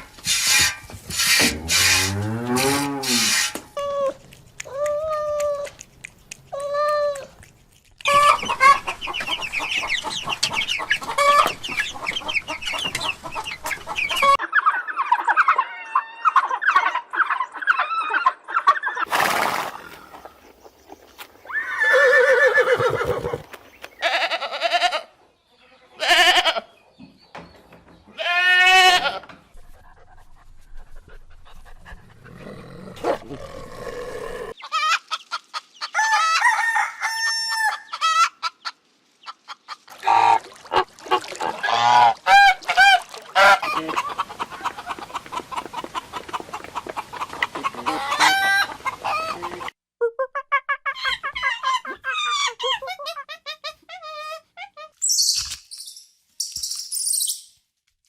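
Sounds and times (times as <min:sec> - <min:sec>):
animal calls: 0:40.0 - 0:49.7.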